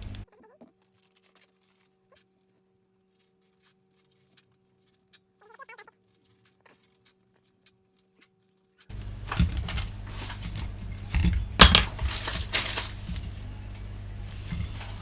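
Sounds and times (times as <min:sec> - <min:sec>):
low steady hum: 0:00.0 - 0:00.2, 0:08.9 - 0:15.0
plastic parts clicking and knocking: 0:08.9 - 0:15.0.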